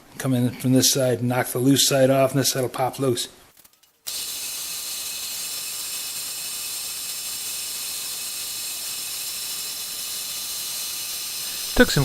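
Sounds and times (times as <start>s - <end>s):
metal-cutting saw cutting steel: 4.1s - 12.0s.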